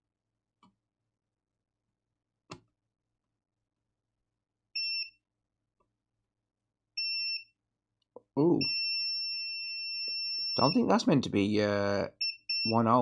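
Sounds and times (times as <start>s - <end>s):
multimeter continuity beeps: 4.8s - 5.2s, 7.0s - 7.5s, 8.4s - 10.9s, 12.1s - 13.0s.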